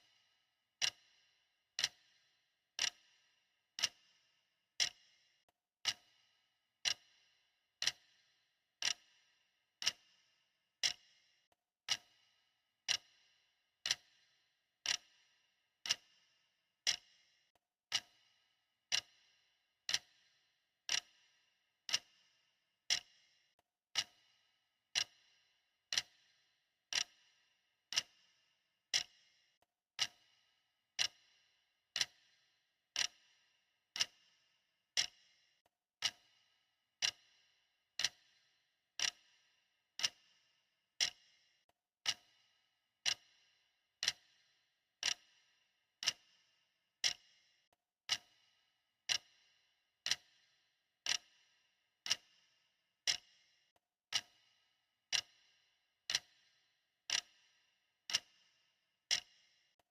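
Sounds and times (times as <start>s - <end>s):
clock ticking: 0.8s - 1.0s, 1.8s - 2.0s, 2.8s - 3.0s, 3.8s - 4.0s, 4.8s - 5.0s, 5.8s - 6.1s, 6.8s - 7.0s, 7.8s - 8.1s, 8.8s - 9.1s, 9.8s - 10.1s, 10.8s - 11.0s, 11.8s - 12.2s, 12.8s - 13.1s, 13.8s - 14.1s, 14.8s - 15.1s, 15.8s - 16.1s, 16.9s - 17.1s, 19.9s - 20.2s, 20.9s - 21.1s, 21.9s - 22.1s, 22.9s - 23.1s, 23.9s - 24.2s, 24.9s - 25.2s, 25.9s - 26.2s, 26.9s - 27.2s, 27.9s - 28.2s, 28.9s - 29.1s, 30.0s - 30.3s, 31.0s - 31.2s, 32.0s - 32.3s, 33.0s - 33.2s, 34.0s - 34.2s, 35.0s - 35.2s, 36.0s - 36.3s, 37.0s - 37.3s, 38.0s - 38.3s, 39.0s - 39.2s, 40.0s - 40.2s, 41.0s - 41.2s, 42.0s - 42.3s, 43.0s - 43.2s, 44.0s - 44.2s, 45.0s - 45.3s, 46.0s - 46.2s, 47.0s - 47.2s, 48.1s - 48.4s, 49.0s - 49.3s, 50.0s - 50.3s, 51.1s - 51.3s, 52.0s - 52.3s, 53.0s - 53.3s, 54.1s - 54.4s, 55.1s - 55.4s, 56.1s - 56.4s, 57.1s - 57.4s, 59.1s - 59.3s.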